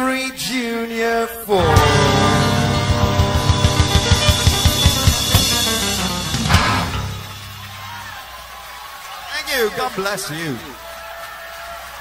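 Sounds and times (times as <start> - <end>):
electric guitar chord ringing: 1.6 - 8.2
rapid drum hits: 1.6 - 8.2.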